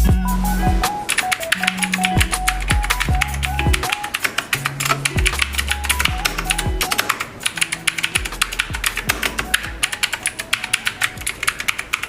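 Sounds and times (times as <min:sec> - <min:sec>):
background music with deep bass: 0:00.0 - 0:10.3
mechanical keyboard typing: 0:00.9 - 0:12.0.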